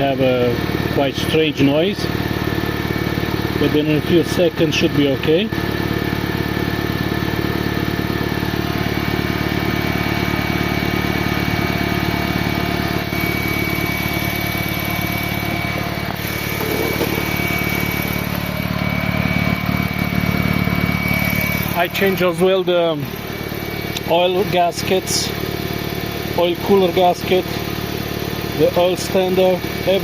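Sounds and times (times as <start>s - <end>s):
car engine idling: 0.1s - 30.0s
steady high whine: 8.7s - 27.2s.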